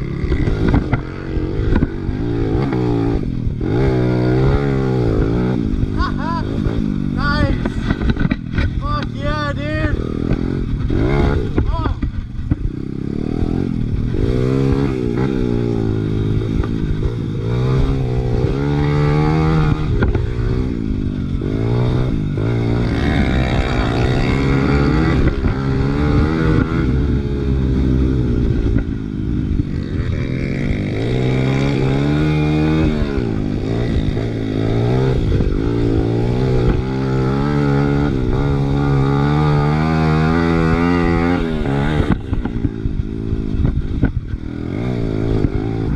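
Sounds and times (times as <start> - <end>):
motorcycle engine revving: 0.0 - 45.9.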